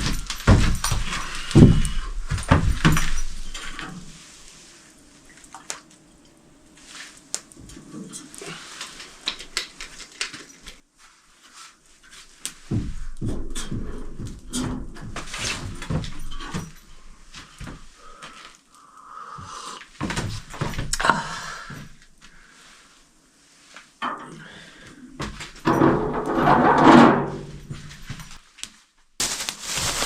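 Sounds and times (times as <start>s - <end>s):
objects knocking and clattering: 0.0s - 4.0s, 12.7s - 16.8s, 25.2s - 28.4s.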